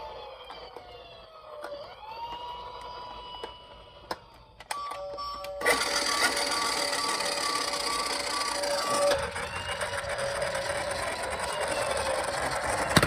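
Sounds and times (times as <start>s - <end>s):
toy electronic siren wailing: 0.0s - 13.0s
pulsed siren tones: 5.7s - 13.0s.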